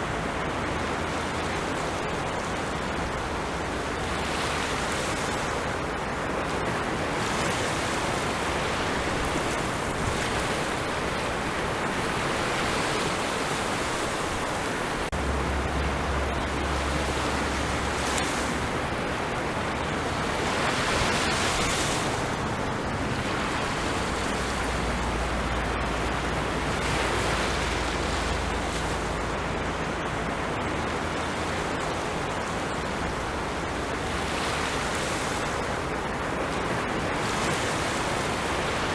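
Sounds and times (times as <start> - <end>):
ocean waves breaking on shore: 0.0 - 38.9
low rumble: 15.1 - 20.2.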